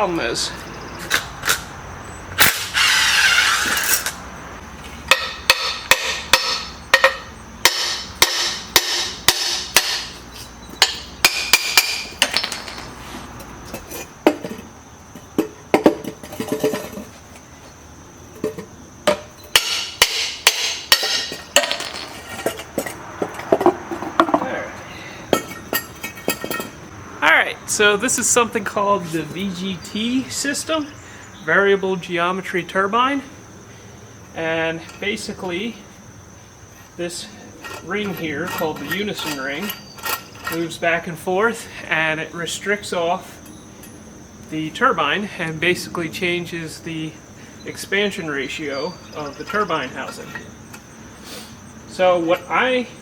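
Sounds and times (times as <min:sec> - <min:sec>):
metal taps and clinks: 0:25.3 - 0:26.8, 0:37.6 - 0:40.6.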